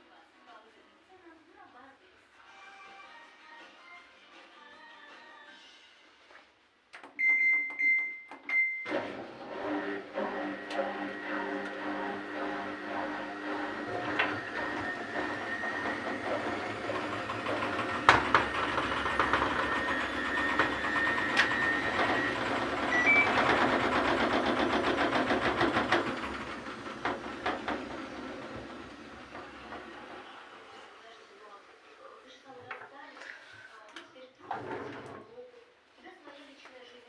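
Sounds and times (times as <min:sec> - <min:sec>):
washing machine drum turning: 0:09.6 - 0:30.4.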